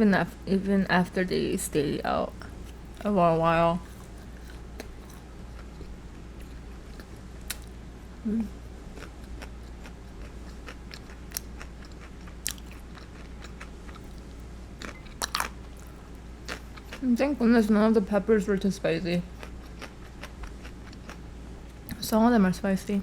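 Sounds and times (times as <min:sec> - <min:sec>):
closed-mouth hum: 0:00.0 - 0:23.0
chewing crisp food: 0:03.8 - 0:17.2, 0:19.2 - 0:22.0.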